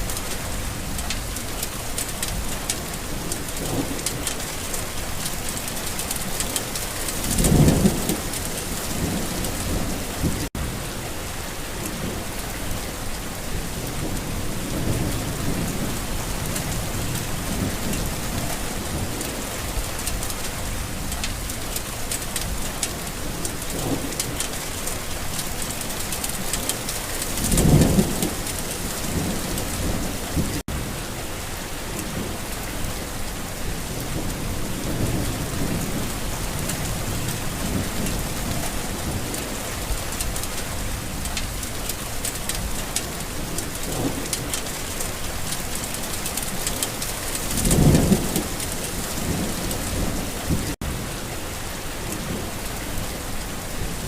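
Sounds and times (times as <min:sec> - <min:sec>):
heavy rain pattering: 0:00.0 - 0:54.0
low rolls of thunder: 0:47.4 - 0:51.1.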